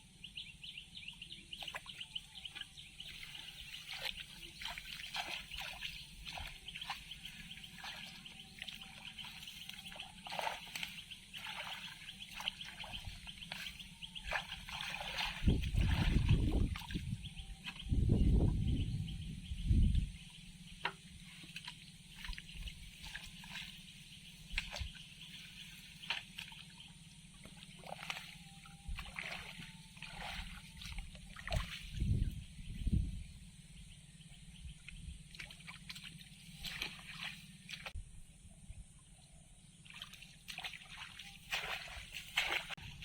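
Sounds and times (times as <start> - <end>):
water trickling and dripping: 2.6 - 17.1.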